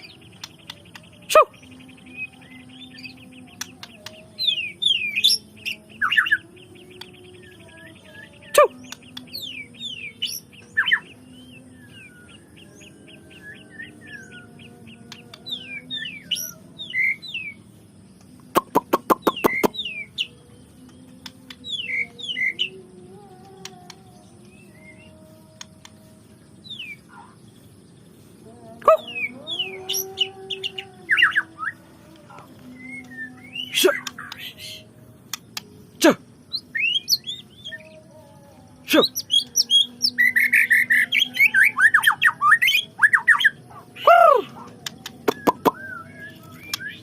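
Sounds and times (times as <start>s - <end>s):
bird singing whistled trills: 0.0s - 47.0s
sharp clicks: 35.3s - 35.7s.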